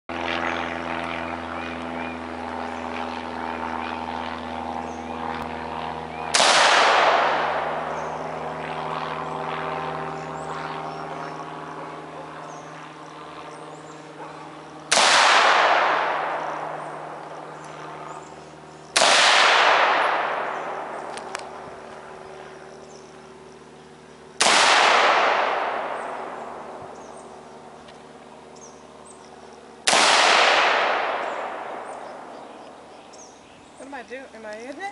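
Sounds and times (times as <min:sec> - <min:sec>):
steady droning hum: 0:00.1 - 0:34.9
rifle shots with echo: 0:06.3 - 0:08.2, 0:14.9 - 0:18.1, 0:18.9 - 0:21.1, 0:24.4 - 0:26.8, 0:29.8 - 0:32.4.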